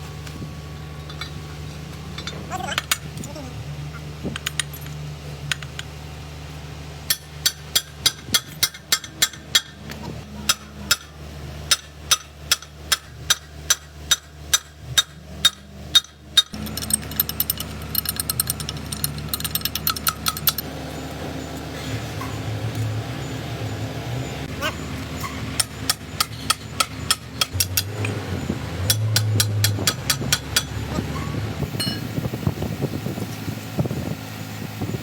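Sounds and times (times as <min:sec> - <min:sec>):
hammer striking metal: 0:07.1 - 0:09.8, 0:10.4 - 0:17.6, 0:25.6 - 0:28.0, 0:28.8 - 0:30.8, 0:31.8 - 0:32.0.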